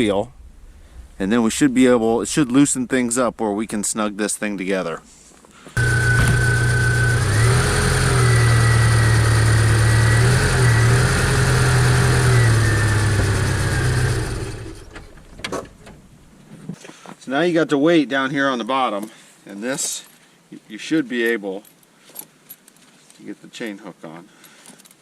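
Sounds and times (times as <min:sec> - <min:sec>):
car engine running: 0:05.8 - 0:15.3.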